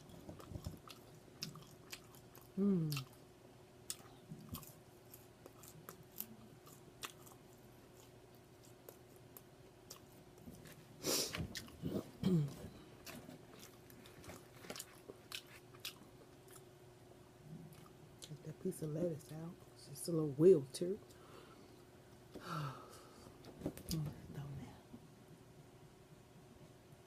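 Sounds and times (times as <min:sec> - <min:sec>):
chewing and crunching food: 0:00.0 - 0:16.8, 0:17.4 - 0:18.6.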